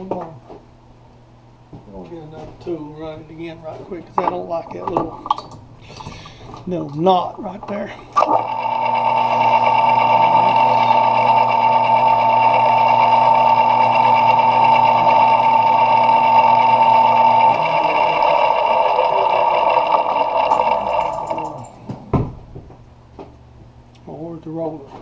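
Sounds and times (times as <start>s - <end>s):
rough machine running noise: 7.8s - 22.0s
metal lathe humming and whining: 8.2s - 21.8s.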